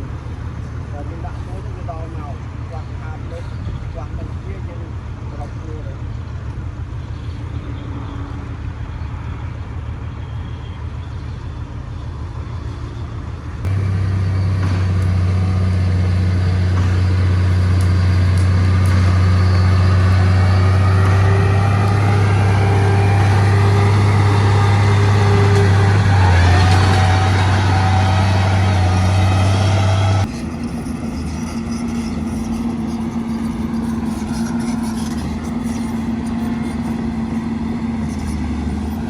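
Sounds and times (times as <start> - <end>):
diesel machinery engine drone: 0.0 - 39.0
high-pitched whine: 13.7 - 39.0.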